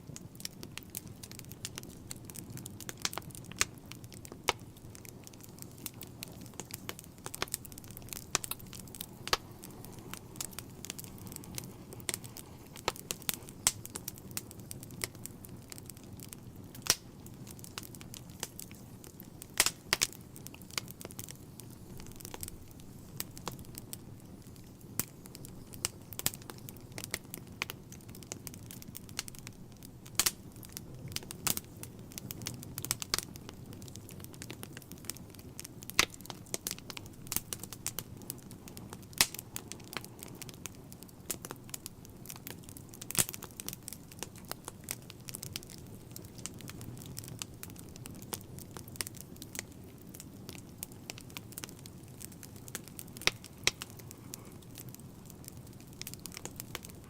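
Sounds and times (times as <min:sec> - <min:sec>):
burning wood crackling: 0:00.0 - 0:57.0
fire rumbling: 0:00.0 - 0:57.0.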